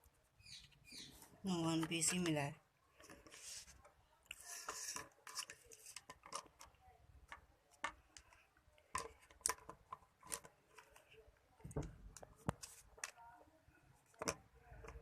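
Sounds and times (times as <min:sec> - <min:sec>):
plastic parts clicking: 0:04.3 - 0:13.2.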